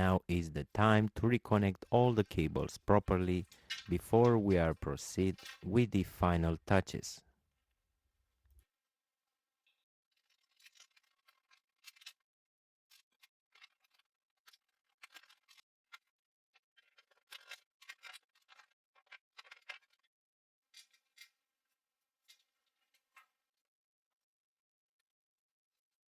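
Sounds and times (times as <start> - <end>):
cables clicking and rustling: 0.0 - 7.0.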